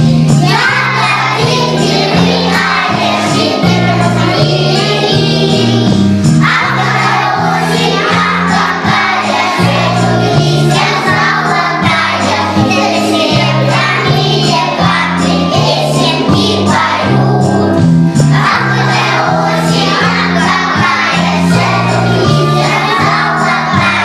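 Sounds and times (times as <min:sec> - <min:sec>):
children singing: 0:00.0 - 0:24.0
musical accompaniment with bass: 0:00.0 - 0:24.0.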